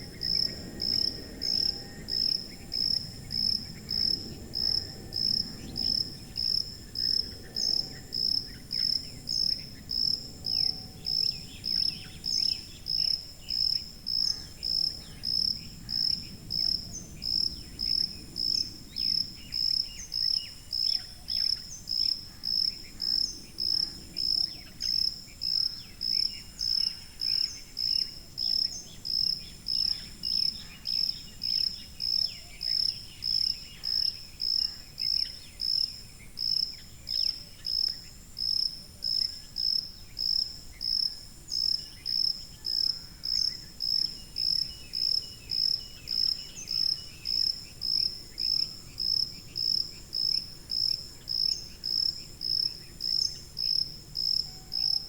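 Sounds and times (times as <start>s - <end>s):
cricket chirping: 0.0s - 55.0s.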